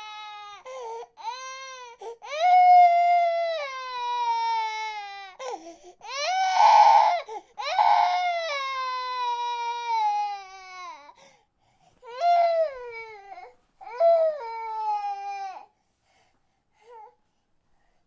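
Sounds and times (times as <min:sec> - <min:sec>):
baby crying: 0:00.0 - 0:11.1.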